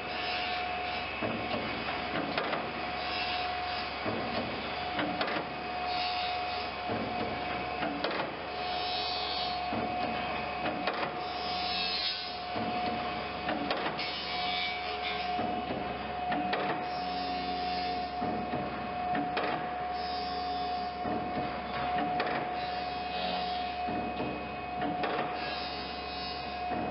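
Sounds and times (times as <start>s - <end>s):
grinding wheel hiss: 0.0s - 1.9s, 2.7s - 5.0s, 5.7s - 9.7s, 11.2s - 13.4s, 14.0s - 15.6s, 16.8s - 18.3s, 19.8s - 21.1s, 22.5s - 23.9s, 25.3s - 26.9s
grinding machine whine: 0.0s - 26.9s.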